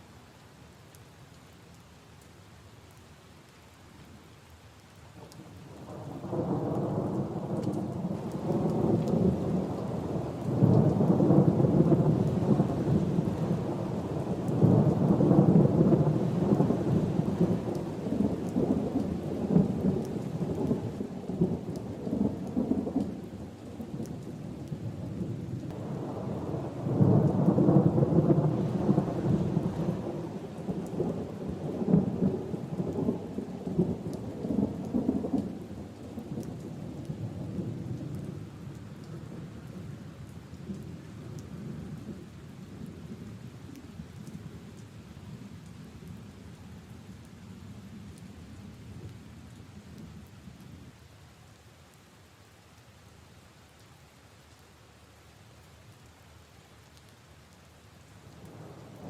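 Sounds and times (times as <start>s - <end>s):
steady rain falling: 0.0s - 59.0s
rolling thunder: 5.9s - 23.4s, 25.1s - 39.8s.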